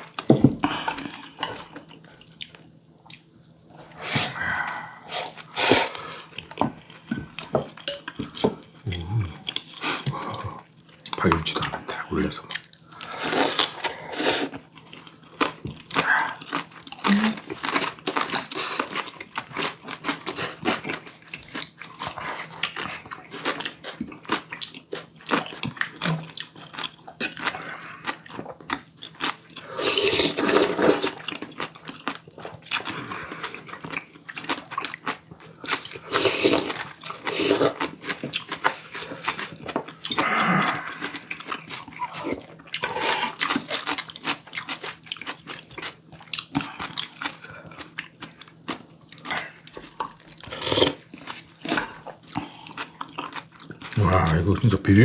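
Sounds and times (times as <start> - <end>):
wet chewing and crunching: 14.5 - 55.0.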